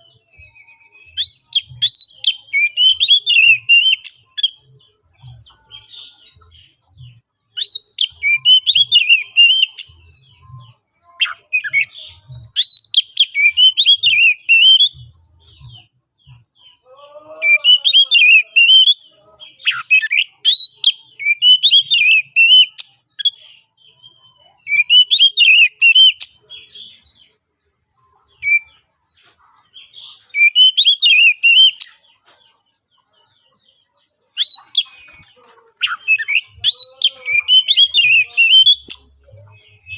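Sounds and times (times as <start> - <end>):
bird singing whistled phrases: 7.6 - 9.9, 12.6 - 15.0, 19.6 - 23.4, 24.6 - 26.3, 30.1 - 32.0, 34.4 - 35.2, 35.8 - 39.1.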